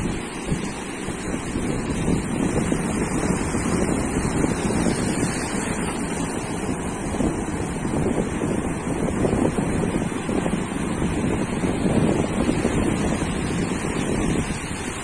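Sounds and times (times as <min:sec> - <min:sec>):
ocean surf on beach: 0:00.0 - 0:15.0
wind buffeting microphone: 0:00.0 - 0:15.0.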